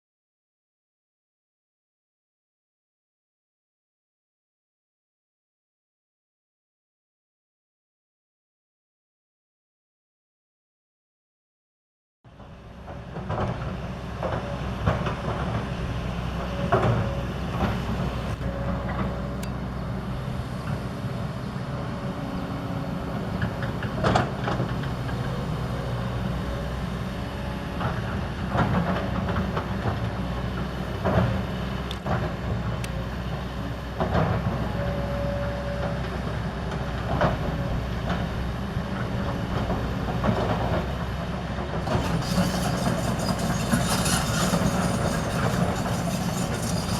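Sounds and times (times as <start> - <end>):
excavator diesel engine running: 12.4 - 46.9
metallic clanks: 41.8 - 46.9.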